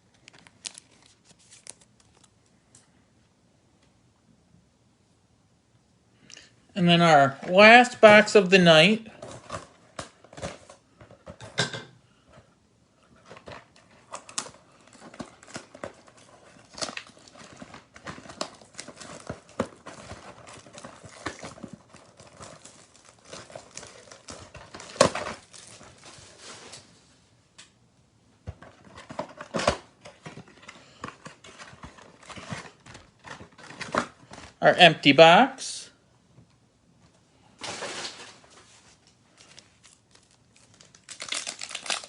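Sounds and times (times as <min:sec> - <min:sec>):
wrapper crackling: 0:00.2 - 0:02.4, 0:13.3 - 0:26.5, 0:39.3 - 0:42.0.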